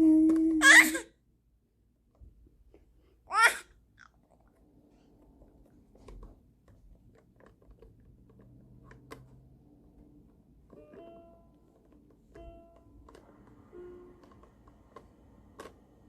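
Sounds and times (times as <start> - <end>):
baby squealing: 0.6 - 1.1, 3.3 - 3.6.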